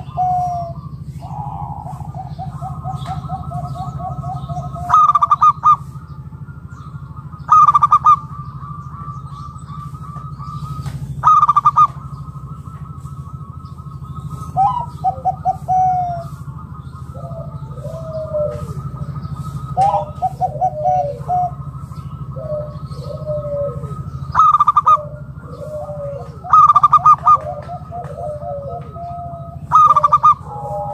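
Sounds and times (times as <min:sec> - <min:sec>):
dove cooing: 0:00.0 - 0:30.9
steady low hum: 0:00.0 - 0:30.9.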